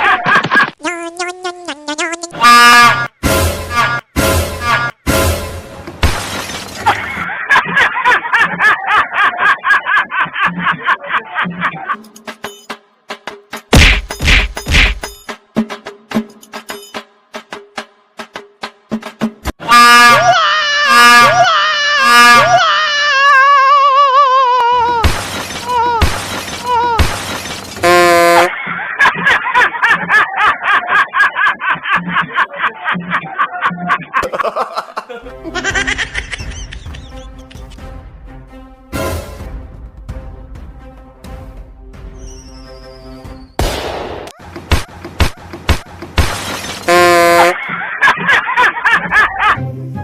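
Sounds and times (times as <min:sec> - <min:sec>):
crashing shattering noise: 0:06.0 - 0:07.1, 0:25.0 - 0:27.8, 0:44.7 - 0:47.0
rhythmic laughter: 0:06.8 - 0:12.4, 0:28.5 - 0:37.8, 0:44.3 - 0:46.2, 0:47.4 - 0:49.7.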